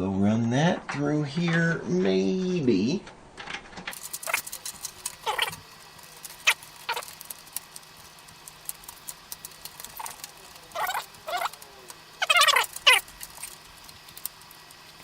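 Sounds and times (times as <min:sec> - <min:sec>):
cable sheathing squeaky rubs: 0:04.0 - 0:05.6, 0:06.2 - 0:07.3, 0:09.7 - 0:14.6.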